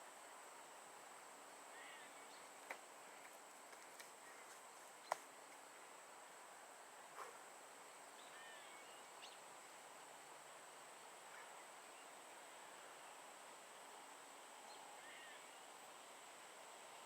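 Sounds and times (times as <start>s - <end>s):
faint bird chirps: 1.7s - 2.6s, 8.1s - 9.5s, 11.3s - 13.1s, 14.6s - 15.7s.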